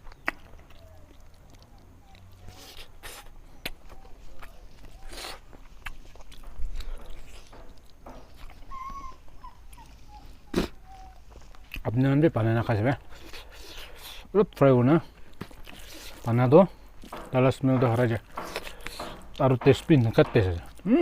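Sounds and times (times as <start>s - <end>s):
lip smacks and chewing: 0.0s - 11.9s, 13.0s - 14.6s, 15.2s - 17.3s, 17.9s - 19.5s.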